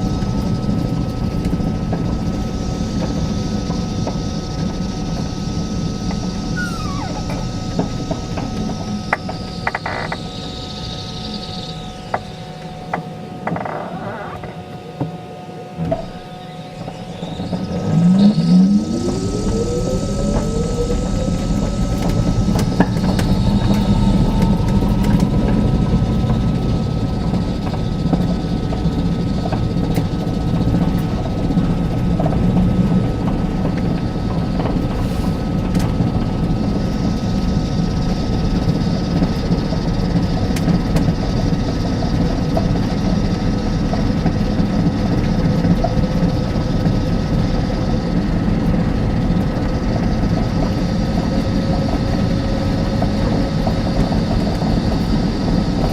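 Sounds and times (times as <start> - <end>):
low road rumble: 0.0 - 12.0, 16.9 - 55.9
electric motor whining: 2.1 - 14.7, 16.0 - 31.6.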